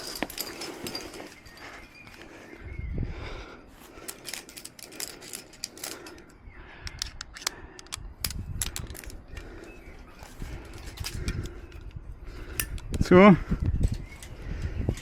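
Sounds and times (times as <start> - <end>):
carabiners knocking together: 0.0 - 2.3, 3.8 - 13.1
climbing hardware clinking: 0.0 - 2.6, 3.8 - 15.0
rustling of movements: 0.0 - 12.8.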